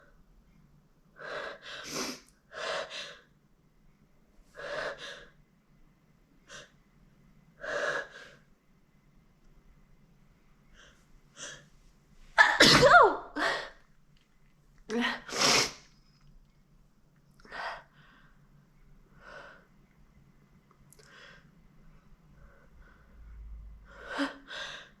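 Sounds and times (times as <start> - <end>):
loud wet sneeze: 12.4 - 13.2, 15.3 - 15.9.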